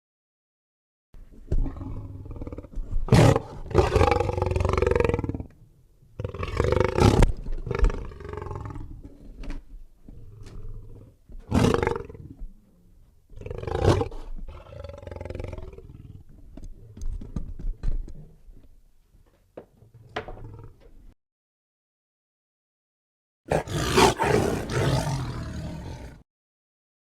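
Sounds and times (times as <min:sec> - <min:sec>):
lion roaring: 0:01.5 - 0:05.5, 0:06.2 - 0:09.1, 0:10.2 - 0:12.4, 0:13.3 - 0:16.2, 0:23.5 - 0:26.2
lion growling: 0:01.5 - 0:05.6, 0:06.2 - 0:12.4, 0:13.3 - 0:17.4, 0:20.3 - 0:20.9, 0:23.5 - 0:26.2.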